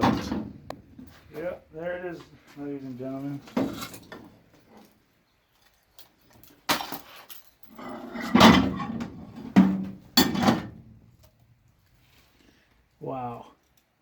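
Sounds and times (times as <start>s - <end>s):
clattering in a microwave: 8.3s - 10.8s.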